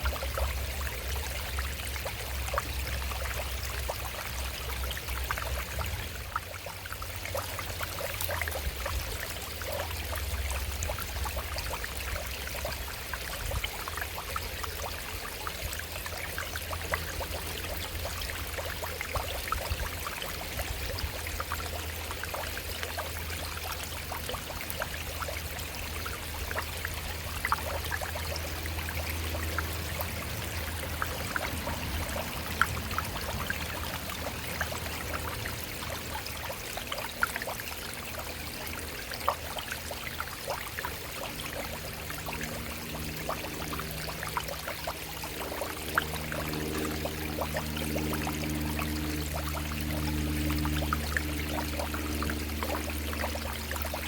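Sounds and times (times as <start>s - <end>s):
stream running over rocks: 0.0s - 54.0s.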